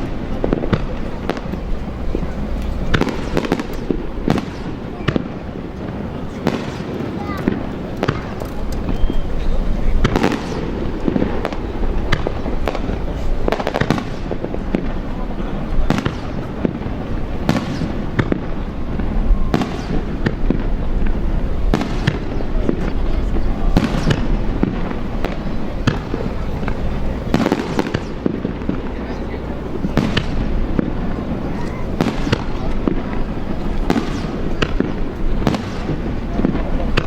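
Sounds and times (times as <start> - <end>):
fireworks booms: 0.0 - 37.0
fireworks crackling: 0.0 - 37.0.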